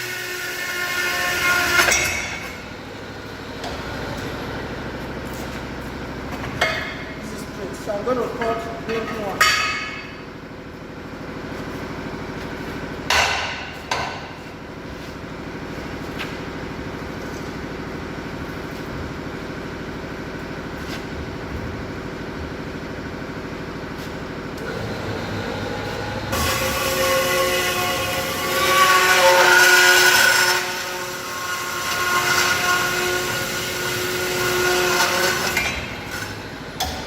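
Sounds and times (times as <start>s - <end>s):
screech of metal being cut: 0.0s - 2.5s, 26.3s - 36.2s
metal saw humming: 0.0s - 10.2s, 24.6s - 37.0s
sharp metal knocks: 13.1s - 14.3s.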